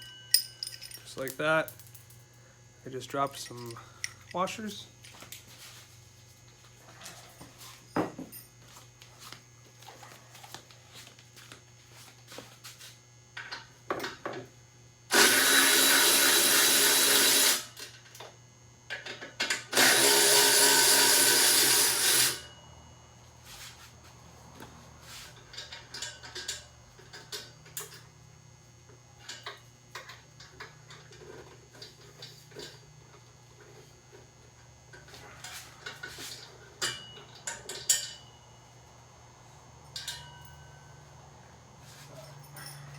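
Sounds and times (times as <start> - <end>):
clicks and knocks of tools: 3.4 - 4.4, 25.4 - 28.1, 29.2 - 33.8
handheld power tool running: 15.1 - 17.8, 19.7 - 22.5.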